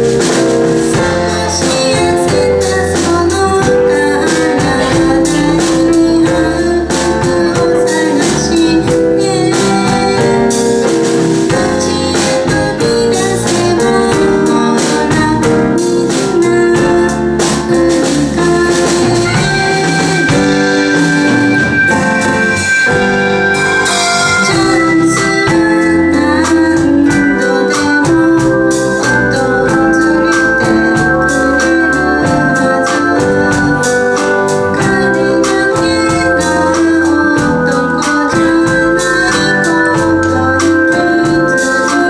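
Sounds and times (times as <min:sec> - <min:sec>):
live band with keyboards and drums: 0:00.0 - 0:42.0.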